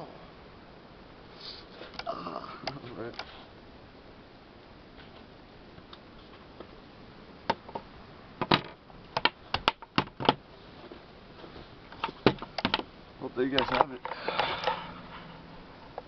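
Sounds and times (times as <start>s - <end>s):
hard objects clicking and knocking: 7.5s - 10.4s, 12.0s - 12.9s.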